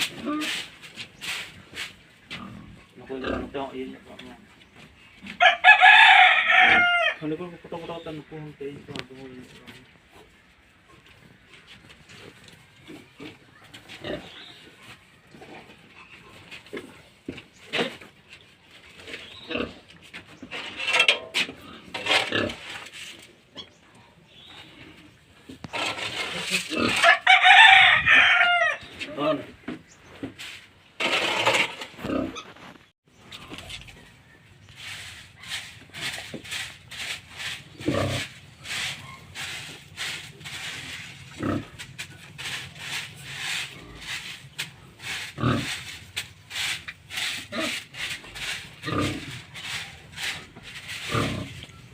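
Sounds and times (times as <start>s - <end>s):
pigs grunting: 2.3s - 3.7s, 13.0s - 14.5s, 21.5s - 22.8s, 37.8s - 42.5s, 45.0s - 45.9s, 47.1s - 51.7s
pigs calling: 46.5s - 51.8s.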